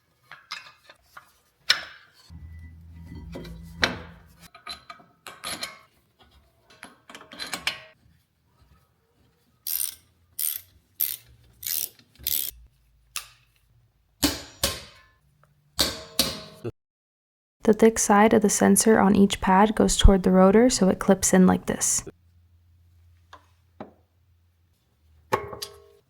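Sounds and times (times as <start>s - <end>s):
ratchet wrench clicking: 9.6s - 12.6s.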